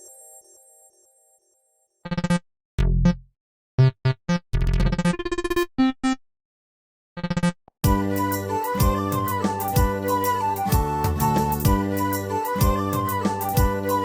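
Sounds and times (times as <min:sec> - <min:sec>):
synthesized ringtone melody: 0:07.9 - 0:14.0.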